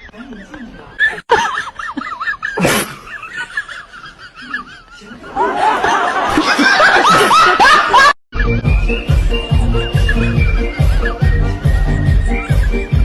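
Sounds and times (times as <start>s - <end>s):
people laughing: 0.0s - 13.0s.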